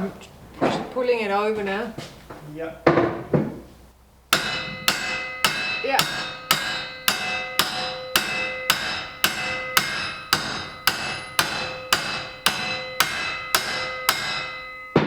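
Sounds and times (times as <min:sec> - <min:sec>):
hammer ringing on metal: 0:04.3 - 0:15.0.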